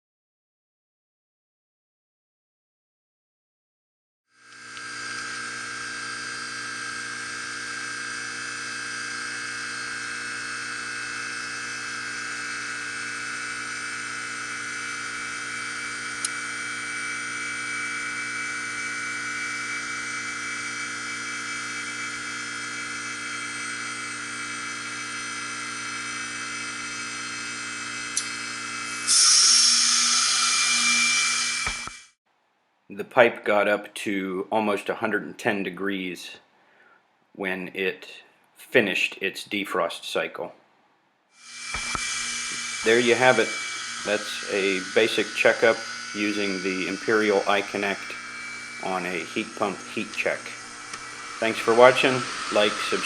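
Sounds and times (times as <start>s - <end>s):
heat pump hum with high whine: 4.5s - 32.0s, 41.5s - 53.0s
heat pump sharp clicks: 16.2s - 16.4s, 49.6s - 52.7s.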